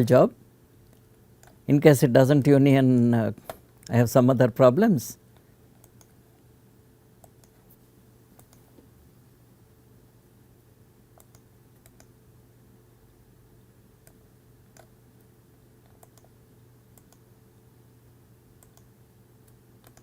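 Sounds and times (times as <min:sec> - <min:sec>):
low electrical hum: 0:00.0 - 0:20.0
computer mouse and keyboard clicks: 0:05.8 - 0:06.2, 0:08.4 - 0:08.8, 0:11.2 - 0:12.1, 0:15.8 - 0:16.3, 0:18.6 - 0:18.9, 0:19.5 - 0:20.0.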